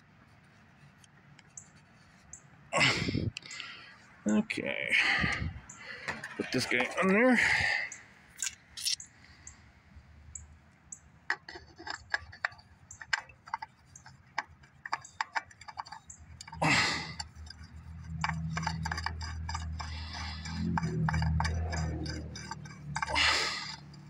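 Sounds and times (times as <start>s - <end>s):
low steady hum: 2.8s - 24.0s
oil filter threading clicks: 10.9s - 24.0s.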